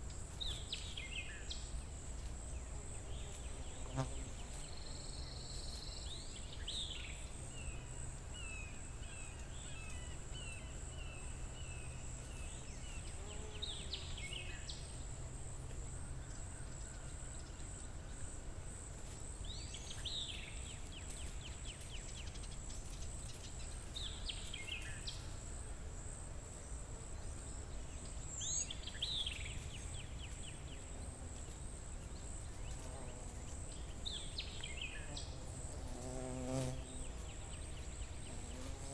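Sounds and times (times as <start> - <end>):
songbird singing with trill: 28.0 - 30.8.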